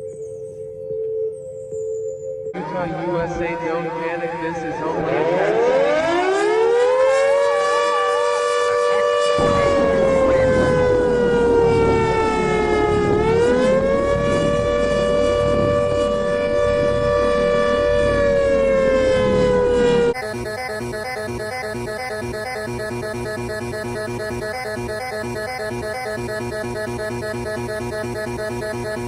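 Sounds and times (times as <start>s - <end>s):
two-tone warning siren: 2.5s - 29.0s
warbling tone: 20.2s - 29.0s.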